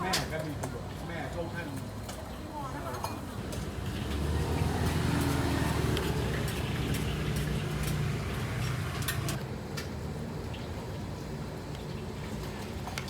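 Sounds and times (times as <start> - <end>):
vehicle engine passing by: 3.7 - 9.4.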